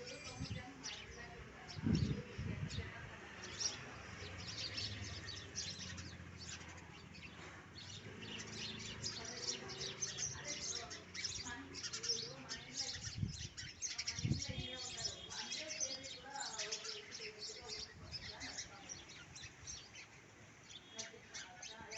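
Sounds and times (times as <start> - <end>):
sparrows chirping: 0.0 - 21.9.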